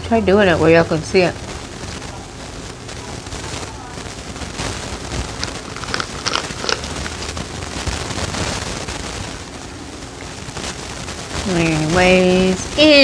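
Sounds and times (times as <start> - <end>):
wet chewing and lip-smacking: 5.4 - 7.2.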